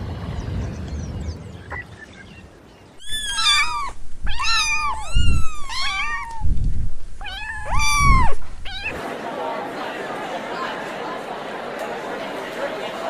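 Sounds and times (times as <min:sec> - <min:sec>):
cat meowing: 0:03.0 - 0:06.6, 0:07.2 - 0:09.0.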